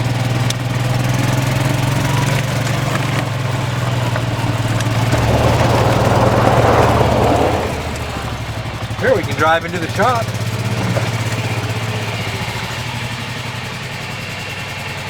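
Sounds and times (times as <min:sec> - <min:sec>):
golf cart engine running: 0:00.0 - 0:15.0
rushing noise: 0:03.9 - 0:13.1.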